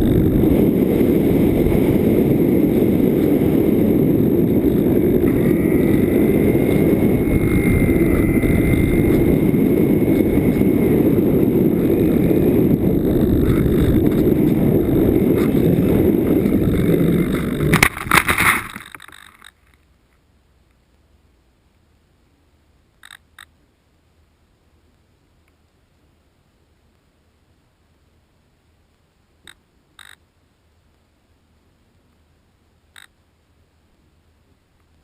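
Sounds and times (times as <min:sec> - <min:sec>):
electric motor whine: 0:00.0 - 0:18.1
wind rushing on microphone: 0:00.0 - 0:18.9.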